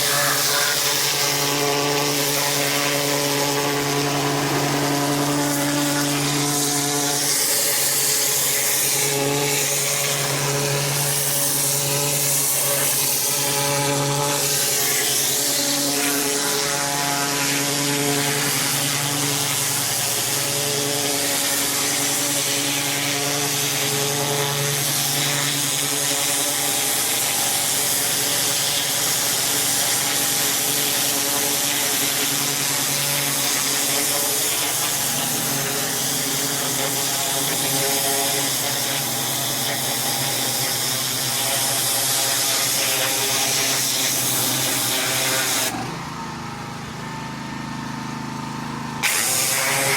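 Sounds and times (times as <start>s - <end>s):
high-pressure water jet hissing: 0.0s - 45.8s, 49.0s - 49.9s
pressure washer engine droning: 0.0s - 49.9s.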